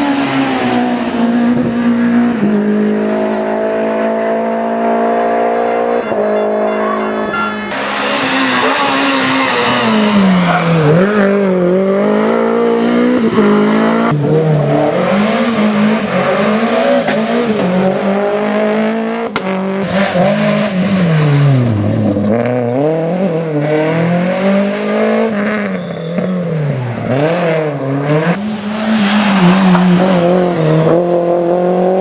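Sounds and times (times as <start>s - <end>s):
car engine revving hard: 0.0s - 6.0s, 7.7s - 25.8s.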